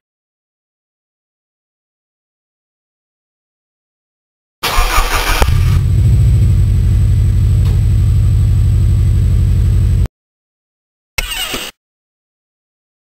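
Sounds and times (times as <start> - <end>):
car engine starting and idling: 4.6 - 10.1.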